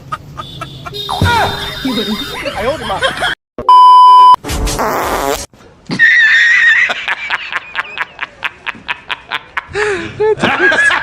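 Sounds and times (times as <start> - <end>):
loud steady beep: 3.7 - 4.4
buzzy rasping fart noise: 4.6 - 5.5.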